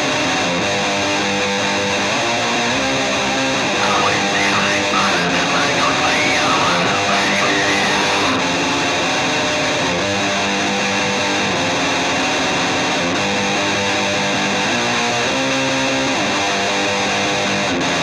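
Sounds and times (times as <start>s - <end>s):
distorted electric guitar chords: 3.6s - 8.7s.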